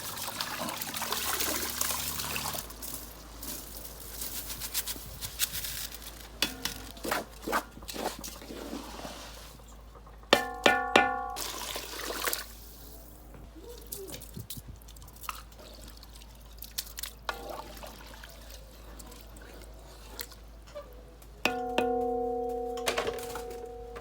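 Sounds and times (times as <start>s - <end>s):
metal cookware ringing strikes: 10.4s - 11.4s, 21.5s - 24.0s.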